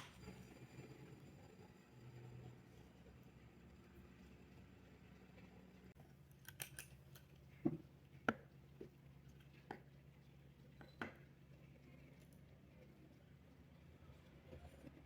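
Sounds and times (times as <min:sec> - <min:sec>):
faint room hum: 0:00.0 - 0:15.0.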